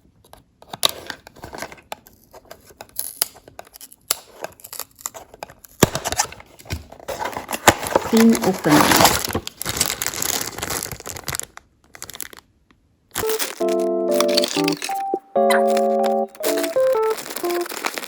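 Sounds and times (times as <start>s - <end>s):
cardboard scraping: 6.0s - 9.5s, 16.4s - 18.0s.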